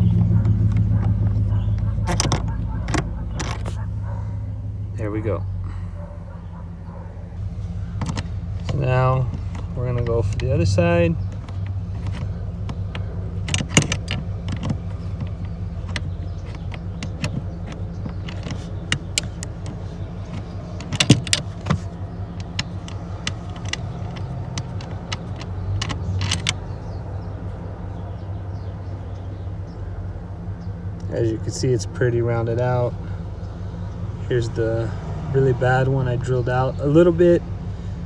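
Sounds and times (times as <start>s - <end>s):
steady low hum: 0.0s - 38.0s
metal hand tools clinking: 7.9s - 26.6s.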